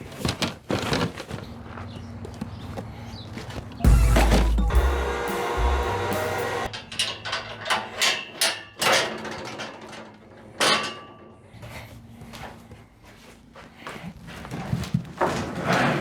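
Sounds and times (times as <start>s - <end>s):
music: 3.8s - 6.7s.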